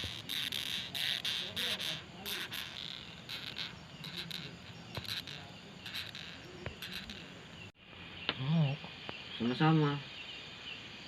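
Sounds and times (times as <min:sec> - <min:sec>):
beetle raspy squeaks: 0:00.0 - 0:07.7.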